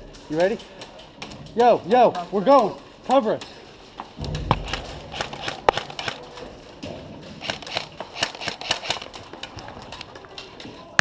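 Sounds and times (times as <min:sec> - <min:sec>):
sharp clicks: 0:04.3 - 0:06.4, 0:07.4 - 0:09.2.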